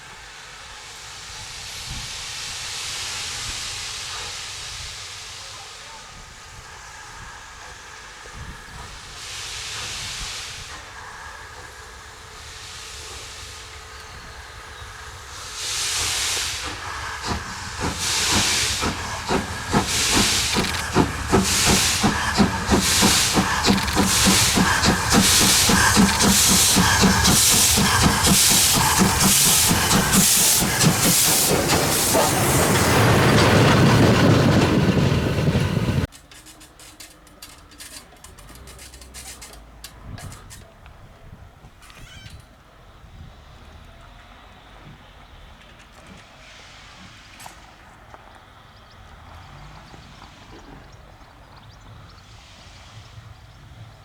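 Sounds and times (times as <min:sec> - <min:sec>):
steam locomotive exhaust beats: 0:00.0 - 0:41.6, 0:42.8 - 0:54.0
low rumble of train: 0:00.0 - 0:54.0.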